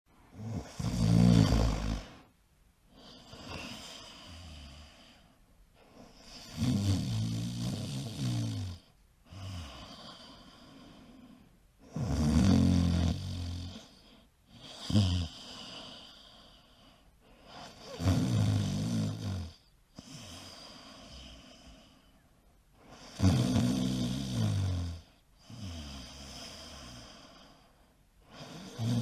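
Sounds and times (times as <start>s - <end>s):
quiet breathing: 0.1s - 29.0s
man snoring: 0.3s - 2.3s, 6.2s - 11.3s, 11.9s - 16.6s, 17.5s - 21.9s, 22.8s - 27.6s, 28.2s - 29.0s.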